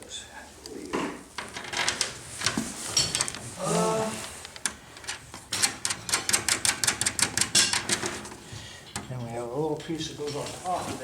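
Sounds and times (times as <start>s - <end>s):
clicks and knocks of parts fitted: 4.5s - 9.3s.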